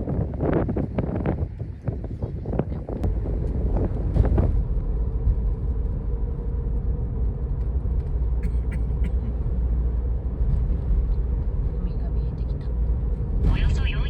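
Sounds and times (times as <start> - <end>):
car interior rumble: 0.0 - 14.0.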